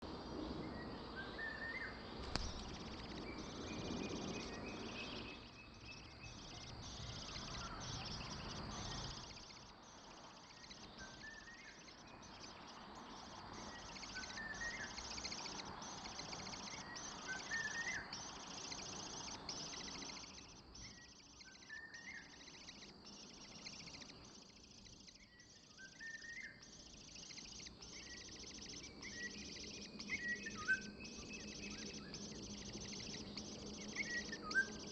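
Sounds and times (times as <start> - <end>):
low outdoor rumble: 0.1 - 24.5
bird chirps: 0.7 - 34.9
high-pitched pulsing buzz: 2.2 - 34.9.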